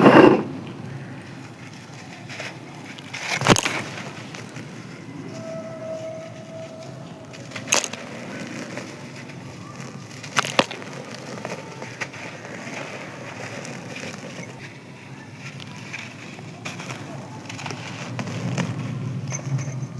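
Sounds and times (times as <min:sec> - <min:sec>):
cement chunks crunching: 0:01.4 - 0:05.0, 0:07.2 - 0:19.3.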